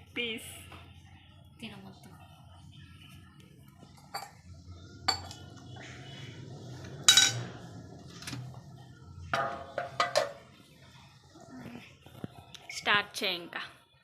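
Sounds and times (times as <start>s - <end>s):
dishes and spoons clinking: 3.8s - 5.7s, 6.9s - 7.6s, 9.3s - 10.5s.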